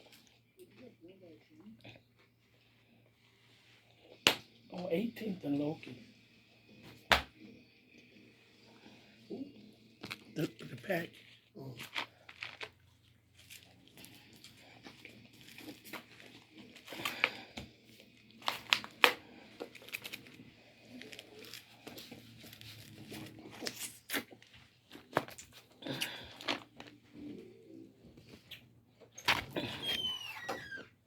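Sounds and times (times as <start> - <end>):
paper wrapping crinkling: 11.1 - 17.5, 18.2 - 27.0
crunching fried chicken: 11.6 - 17.4.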